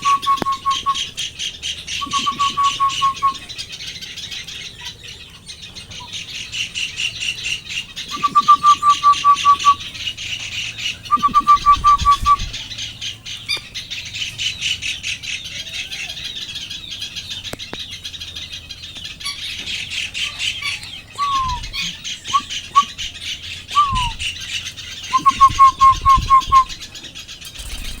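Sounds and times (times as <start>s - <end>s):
bird calling short notes: 0.0s - 1.1s, 2.0s - 3.5s, 8.1s - 10.0s
steady high chirring: 0.0s - 3.6s.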